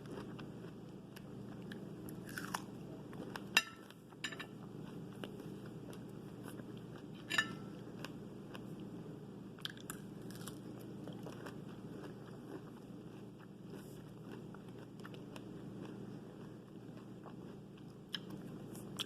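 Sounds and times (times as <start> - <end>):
chewing and biting fruit: 0.0 - 4.1, 9.6 - 19.0.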